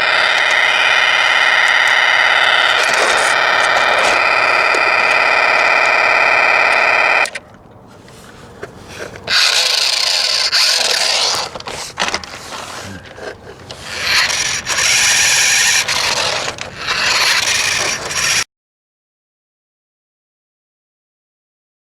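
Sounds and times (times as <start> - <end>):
distorted electronic buzzing tone: 0.0 - 7.4.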